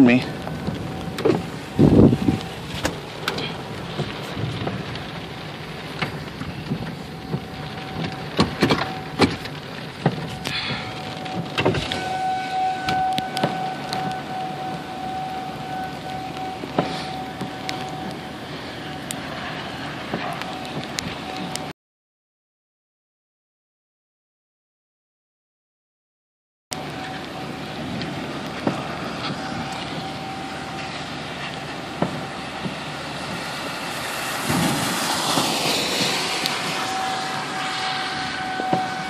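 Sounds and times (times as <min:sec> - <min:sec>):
rain and wind on a car: 0:00.0 - 0:21.7, 0:26.7 - 0:39.0
tornado warning siren: 0:00.0 - 0:21.8, 0:26.7 - 0:39.0
raindrops ticking on roof and glass: 0:00.3 - 0:19.2.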